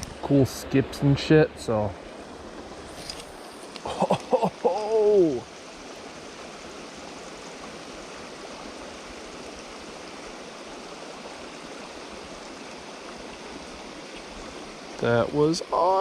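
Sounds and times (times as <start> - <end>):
creek water spilling over dam: 0.0 - 16.0.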